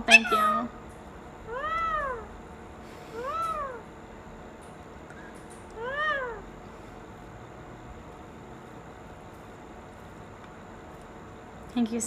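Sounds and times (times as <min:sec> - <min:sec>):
parrot imitating cat meow: 0:00.0 - 0:00.8, 0:01.5 - 0:02.3, 0:03.2 - 0:03.9, 0:05.8 - 0:06.4.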